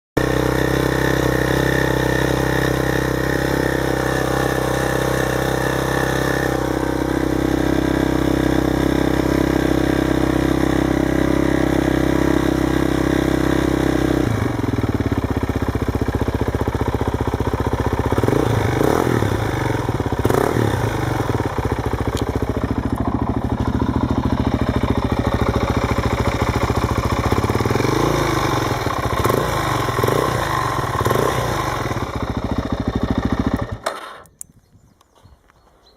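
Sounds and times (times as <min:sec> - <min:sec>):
motorcycle engine idling: 0:00.2 - 0:35.6.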